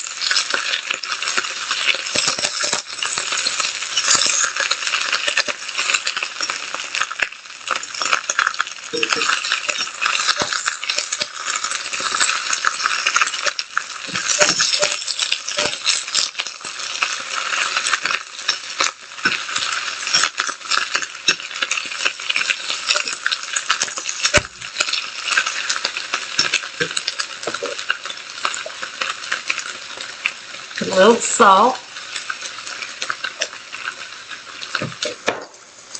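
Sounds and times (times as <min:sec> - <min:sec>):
spinach sizzling in oil: 0:00.0 - 0:35.9
utensil scraping a pan: 0:09.0 - 0:27.8.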